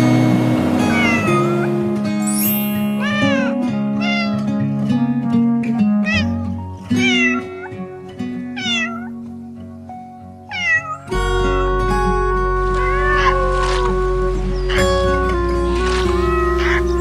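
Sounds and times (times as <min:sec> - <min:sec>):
deep bass: 0:00.0 - 0:02.3, 0:11.2 - 0:17.0
music with sustained notes: 0:00.0 - 0:17.0
cat meowing: 0:00.8 - 0:01.7, 0:03.0 - 0:04.6, 0:06.0 - 0:07.8, 0:08.5 - 0:09.2, 0:10.5 - 0:11.2, 0:12.8 - 0:13.6, 0:14.6 - 0:15.2, 0:15.8 - 0:17.0.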